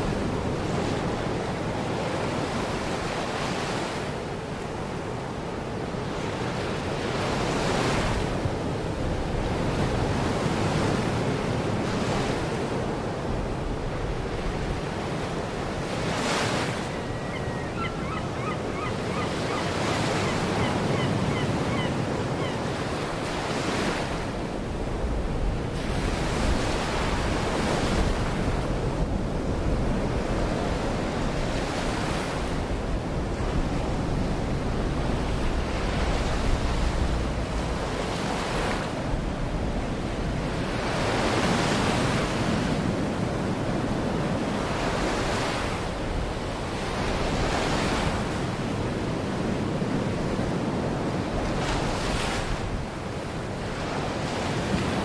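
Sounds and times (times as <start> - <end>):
waves breaking on shore: 0.0 - 55.0
faint bird calls: 16.9 - 22.6
wind rumbling on microphone: 23.8 - 53.1.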